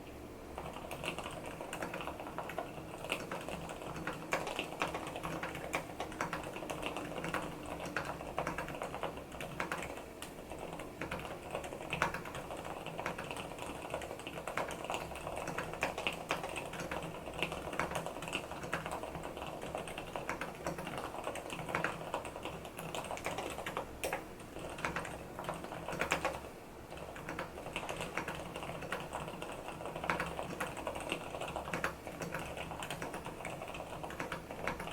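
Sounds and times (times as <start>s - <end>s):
muted mechanical keyboard typing: 0.6s - 34.9s.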